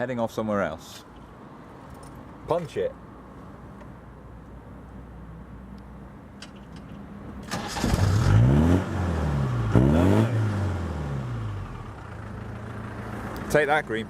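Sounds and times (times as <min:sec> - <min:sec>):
engine revving: 0:07.4 - 0:13.5.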